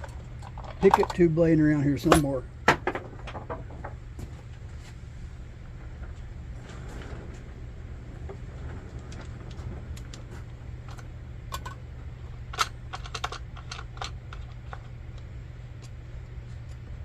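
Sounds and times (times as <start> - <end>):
small hard parts clinking: 0.0 - 1.4, 8.6 - 16.0
steady low hum: 0.0 - 17.0.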